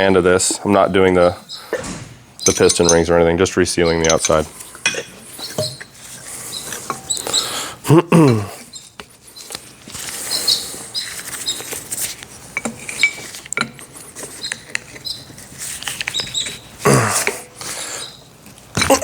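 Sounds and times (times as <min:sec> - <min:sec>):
metal tools clinking on workbench: 0:02.4 - 0:03.1, 0:03.8 - 0:05.1.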